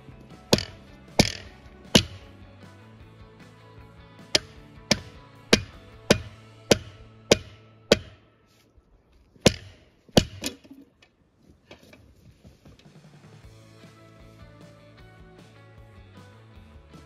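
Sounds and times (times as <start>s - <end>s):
quiet guitar music: 0.0s - 8.6s, 13.4s - 17.0s
hammer striking metal wedge: 0.5s - 2.3s, 4.4s - 8.2s, 9.4s - 10.8s.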